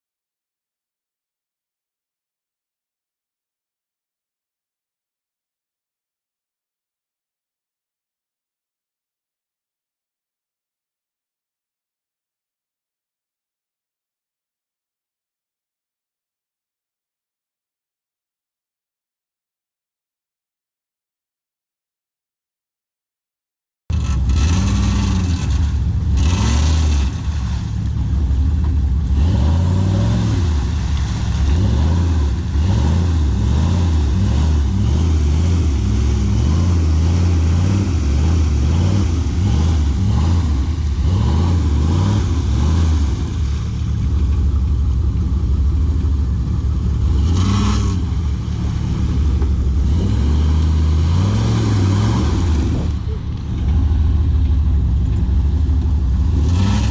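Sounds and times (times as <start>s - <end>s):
off-road vehicle engine revving: 23.9s - 56.9s.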